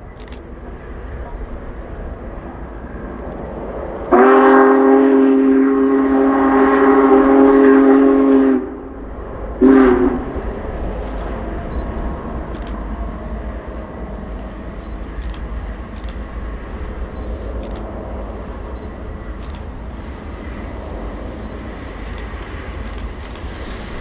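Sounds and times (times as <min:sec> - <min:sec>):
steady low rumble: 0:00.0 - 0:24.0
steam whistle blasts: 0:04.1 - 0:09.0, 0:09.6 - 0:10.5.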